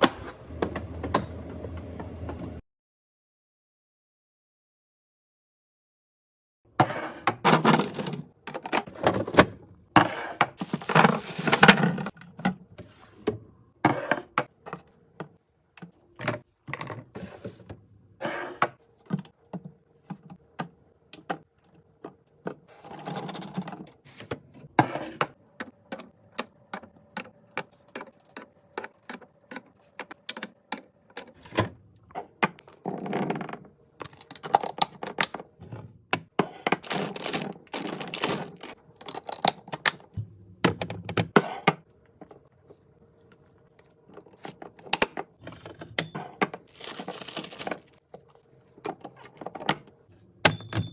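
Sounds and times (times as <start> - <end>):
packaging rustling: 36.8 - 38.8, 46.7 - 48.4.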